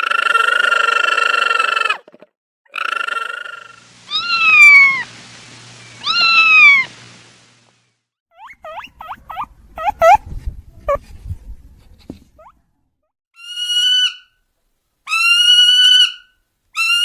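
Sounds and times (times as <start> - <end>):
cat meowing: 4.1 - 5.1, 6.0 - 6.9.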